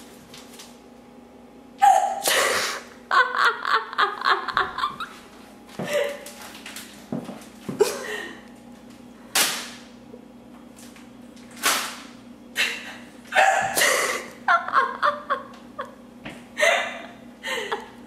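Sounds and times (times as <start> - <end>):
person hiccuping: 1.8 - 2.8.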